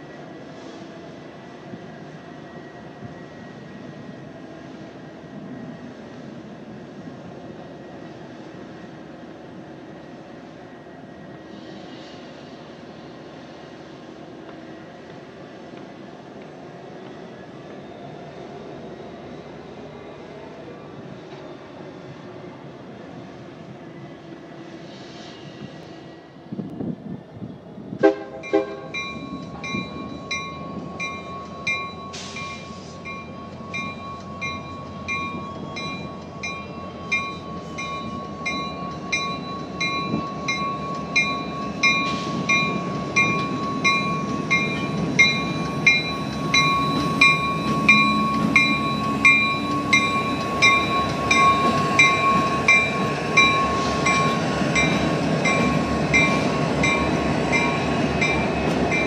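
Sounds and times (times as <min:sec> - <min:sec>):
train rumbling: 0:00.0 - 0:59.0
railroad warning bell ringing: 0:28.3 - 0:59.0.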